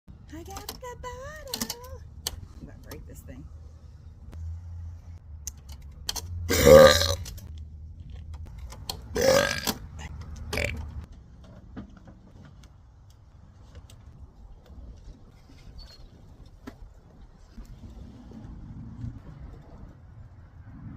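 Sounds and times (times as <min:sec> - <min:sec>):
woman burping: 0:06.5 - 0:07.2, 0:09.2 - 0:09.7.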